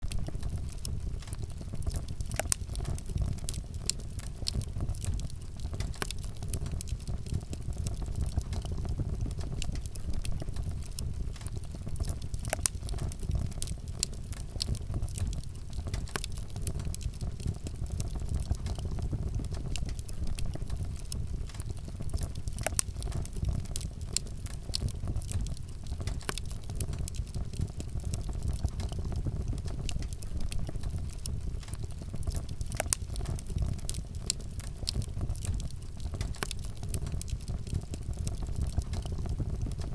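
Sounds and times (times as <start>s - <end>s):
fire flames rumbling: 0.0s - 39.9s
wood crackling and popping: 0.0s - 39.9s.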